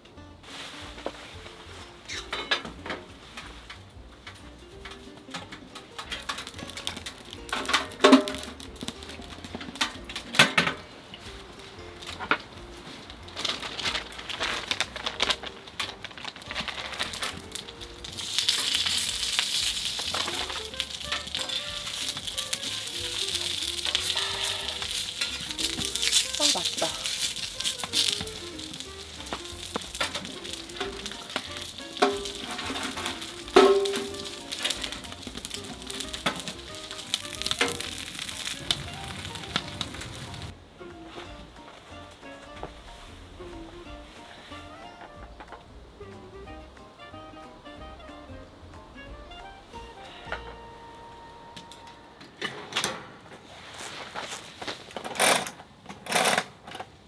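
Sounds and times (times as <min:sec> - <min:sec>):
clicking and rustling handling: 0:02.2 - 0:40.6, 0:53.8 - 0:57.0
food sizzling in a hot pan: 0:17.0 - 0:40.5.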